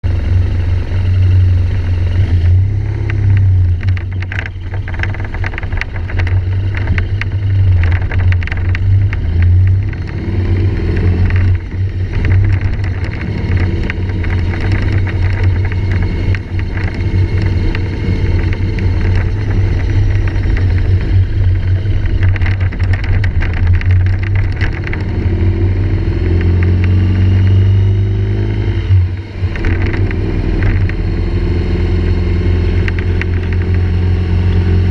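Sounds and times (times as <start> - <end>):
vehicle running drone: 0.0 - 34.9
camera rattling in housing: 3.1 - 25.3, 29.4 - 31.0, 32.8 - 33.9.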